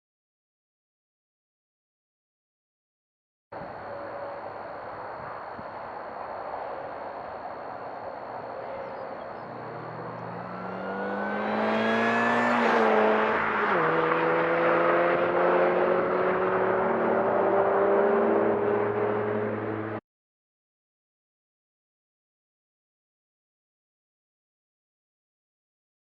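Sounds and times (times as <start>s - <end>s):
supercharger whine: 3.6s - 20.0s
car engine accelerating: 6.6s - 20.0s.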